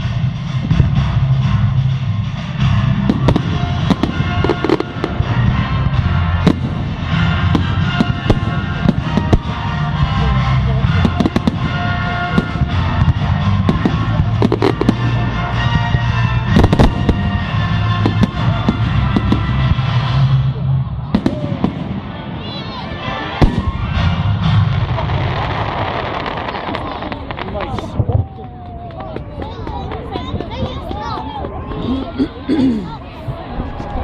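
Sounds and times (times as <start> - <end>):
loud music with heavy bass: 0.0 - 21.3
fireworks bangs and crackles: 0.0 - 31.8.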